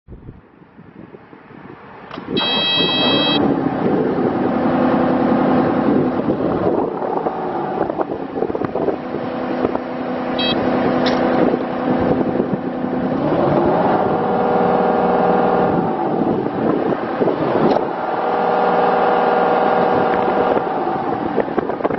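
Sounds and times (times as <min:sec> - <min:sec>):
diesel engine starting and running: 0:00.1 - 0:21.9
short electronic beep: 0:02.4 - 0:03.4, 0:10.4 - 0:10.6.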